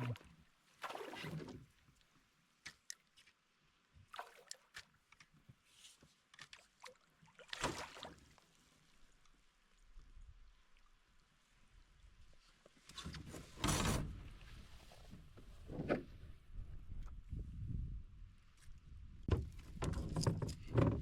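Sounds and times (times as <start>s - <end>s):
water splashes: 0.0s - 1.9s, 4.0s - 5.1s, 6.5s - 11.0s.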